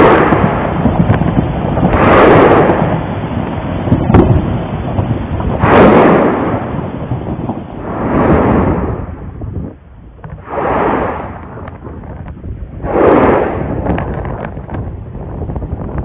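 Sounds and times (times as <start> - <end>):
sharp crack: 0.0 - 3.0, 5.6 - 6.7, 10.2 - 14.8
steady low rumble: 0.0 - 16.0
volcano rumbling blasts: 0.0 - 16.0.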